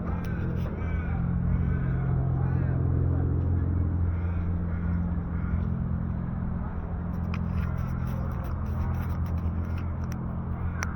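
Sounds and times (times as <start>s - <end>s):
light clicks and scrapes: 0.0s - 0.8s, 7.1s - 10.9s
car engine droning: 0.0s - 10.9s
road traffic hum: 0.0s - 10.9s.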